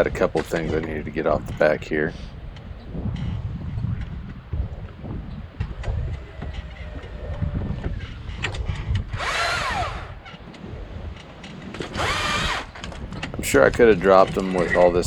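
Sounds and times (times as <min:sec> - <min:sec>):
wind rumble on microphone: 0:00.0 - 0:15.0
electric chainsaw revving: 0:09.1 - 0:10.3, 0:11.7 - 0:13.0.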